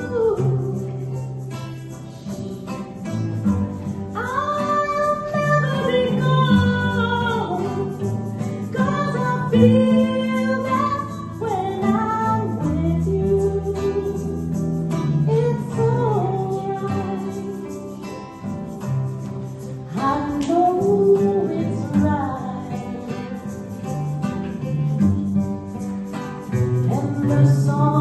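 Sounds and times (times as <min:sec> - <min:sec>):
instrumental accompaniment: 0:00.0 - 0:28.0
person singing slow song: 0:04.1 - 0:18.4, 0:26.8 - 0:28.0.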